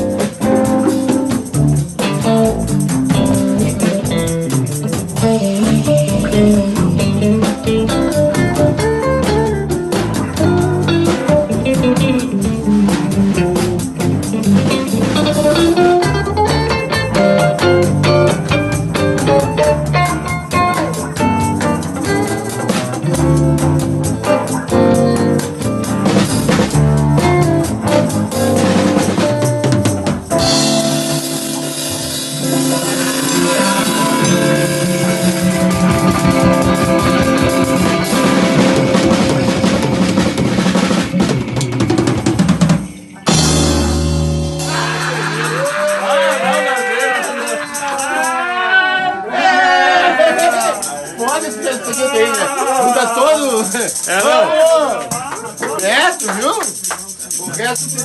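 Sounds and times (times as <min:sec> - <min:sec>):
bass line: 0:00.0 - 0:46.4
quick melodic notes: 0:00.0 - 0:48.3
drum kit beat: 0:00.0 - 0:48.4, 0:49.4 - 0:58.0
guitar playing: 0:00.0 - 0:58.0.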